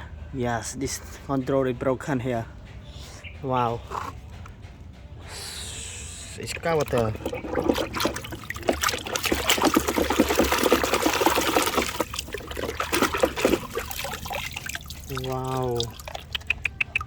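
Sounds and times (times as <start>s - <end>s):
water trickling and splashing: 6.4s - 17.0s.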